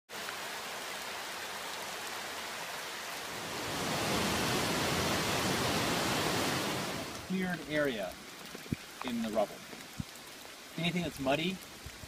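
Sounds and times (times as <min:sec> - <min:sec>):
creek water rushing over rocks: 0:00.1 - 0:12.0.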